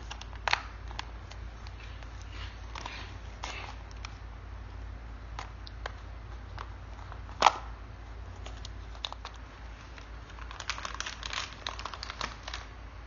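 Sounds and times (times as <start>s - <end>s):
packaging snapping: 0.0s - 4.2s, 8.4s - 12.7s
packaging crinkling: 8.3s - 12.8s.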